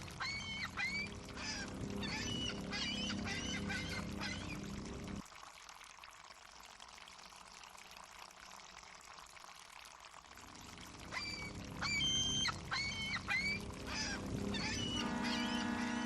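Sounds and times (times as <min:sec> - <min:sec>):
seagulls yelping: 0:00.0 - 0:04.6, 0:11.1 - 0:16.0
low steady horn: 0:14.8 - 0:16.0.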